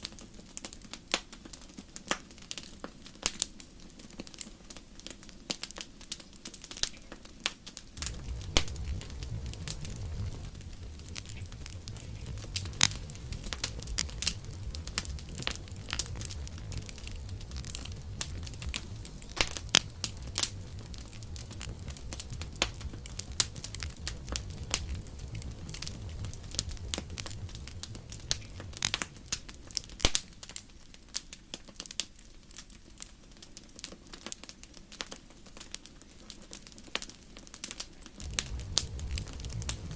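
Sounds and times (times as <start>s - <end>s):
campfire crackling and popping: 0.0s - 39.9s
low rumble: 8.0s - 30.5s, 38.2s - 39.9s.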